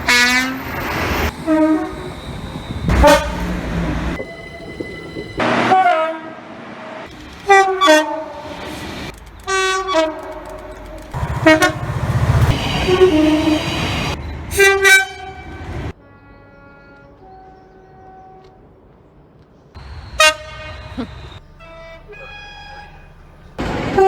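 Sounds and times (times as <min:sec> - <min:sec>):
low train rumble: 0:00.0 - 0:24.0
train two-tone horn blasts: 0:01.3 - 0:04.3, 0:05.4 - 0:06.6, 0:07.5 - 0:08.7, 0:09.5 - 0:10.5, 0:11.2 - 0:13.9, 0:14.5 - 0:18.7, 0:19.8 - 0:24.0.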